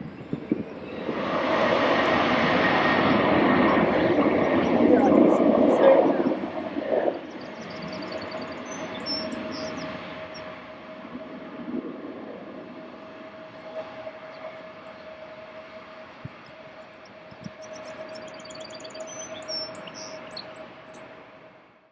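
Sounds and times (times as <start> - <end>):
small birds chirping: 7.3 - 10.5, 17.6 - 20.6.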